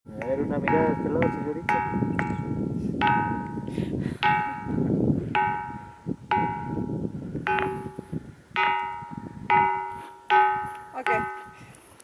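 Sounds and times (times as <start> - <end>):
rock striking ringing stone: 7.5 - 11.6.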